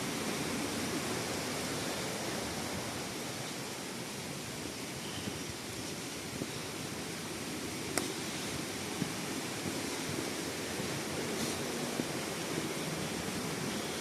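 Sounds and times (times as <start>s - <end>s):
waterfall rushing: 0.0s - 5.0s.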